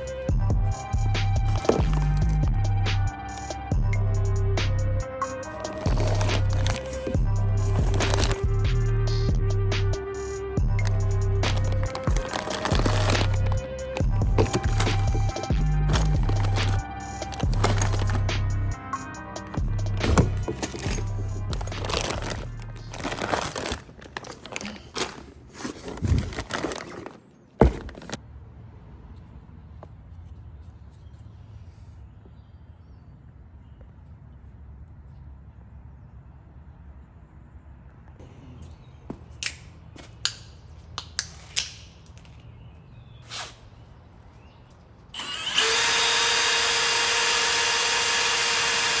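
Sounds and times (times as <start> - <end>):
rustling and crinkling: 1.3 - 2.5, 5.4 - 9.0, 10.8 - 18.4, 19.4 - 28.2
power tool whining: 10.8 - 18.5, 19.4 - 25.2, 45.2 - 49.0
brief hisses: 43.2 - 43.7.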